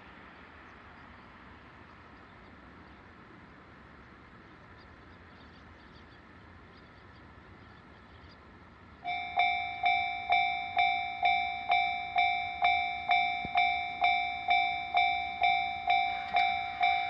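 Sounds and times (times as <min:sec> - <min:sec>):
faint outdoor background noise: 0:00.0 - 0:17.0
faint high chirps: 0:09.1 - 0:17.0.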